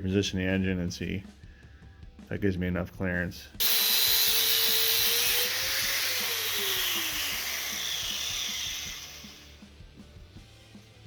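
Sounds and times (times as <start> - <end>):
angle grinder grinding metal: 3.6 - 9.6.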